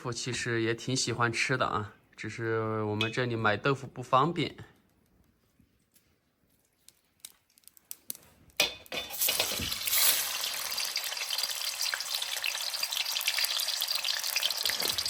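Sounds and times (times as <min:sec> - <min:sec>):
tofu sizzling in hot oil: 0:08.9 - 0:15.0.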